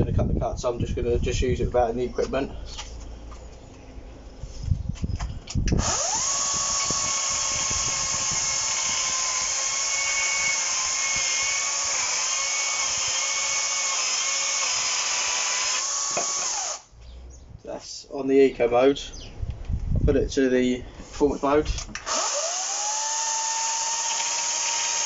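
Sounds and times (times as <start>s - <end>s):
cordless chainsaw whine cutting wood: 5.8s - 16.9s, 22.0s - 25.0s.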